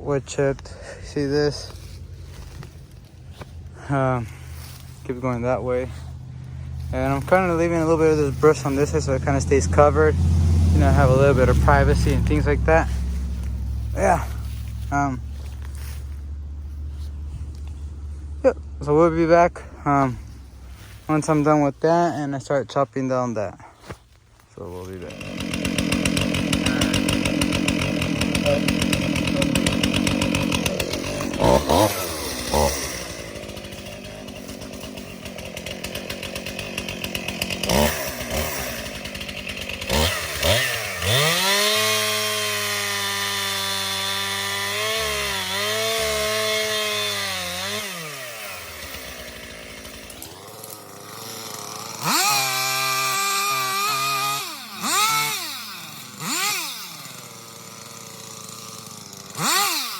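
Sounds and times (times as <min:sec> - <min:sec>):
chainsaw revving: 0:00.0 - 0:59.9.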